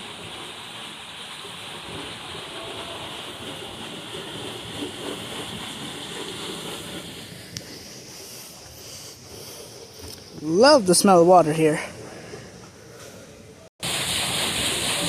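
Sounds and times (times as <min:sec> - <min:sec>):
running water splashing: 0:13.8 - 0:15.0.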